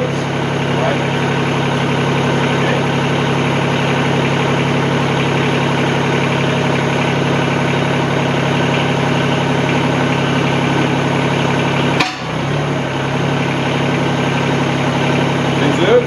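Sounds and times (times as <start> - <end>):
tractor diesel engine idling: 0.0 - 16.0
sharp knock: 12.0 - 12.4.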